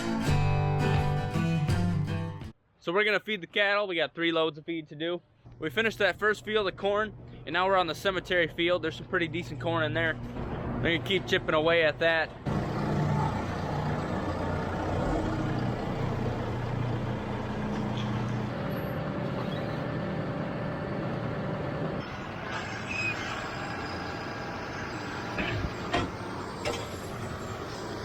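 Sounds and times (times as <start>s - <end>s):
farm machine engine running: 12.5s - 28.0s.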